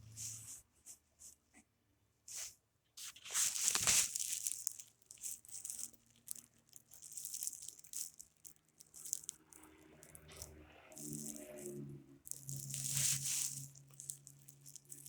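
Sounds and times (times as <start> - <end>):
sand crumbling crackle: 3.0 - 15.0.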